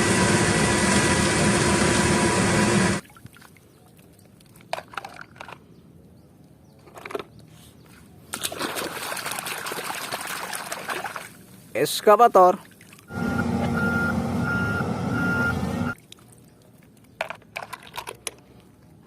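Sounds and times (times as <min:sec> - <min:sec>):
running water splashing: 0:08.4 - 0:11.5.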